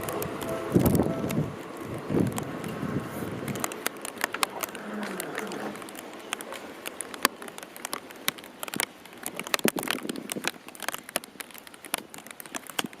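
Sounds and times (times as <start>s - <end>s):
faint rain hiss: 0.0s - 13.0s
raindrops ticking near microphone: 0.0s - 13.0s.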